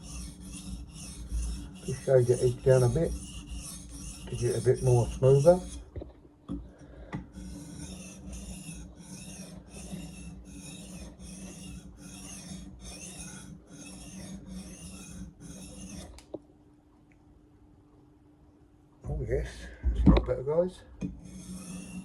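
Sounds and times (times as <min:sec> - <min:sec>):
axe scraping on sharpener: 0:00.0 - 0:05.9, 0:07.4 - 0:16.2, 0:21.2 - 0:22.0.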